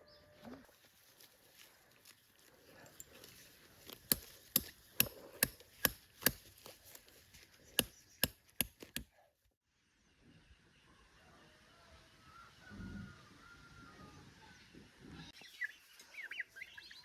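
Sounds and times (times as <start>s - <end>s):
tool striking hard surface: 4.0s - 6.5s, 7.8s - 9.1s.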